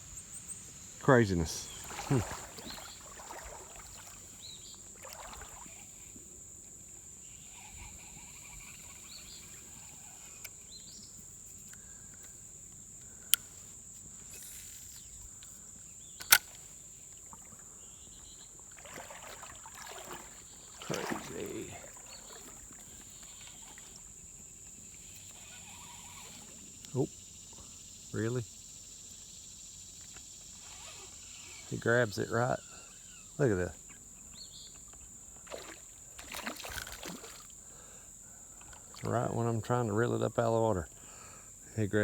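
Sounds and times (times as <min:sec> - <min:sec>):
high-pitched insect drone: 0:00.0 - 0:12.5, 0:17.8 - 0:34.8
sharp clicks: 0:16.2 - 0:16.7.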